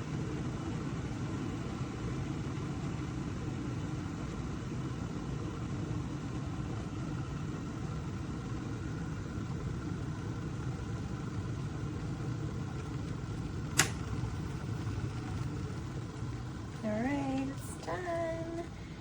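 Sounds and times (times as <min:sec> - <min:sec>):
electric kettle heating water: 0:00.0 - 0:19.0
kettle shut-off click: 0:12.8 - 0:16.4.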